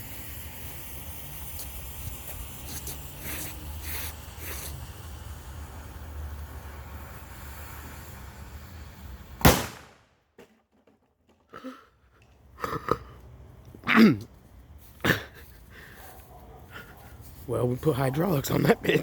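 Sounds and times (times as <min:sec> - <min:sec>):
loud sharp bang: 0:09.4 - 0:10.1.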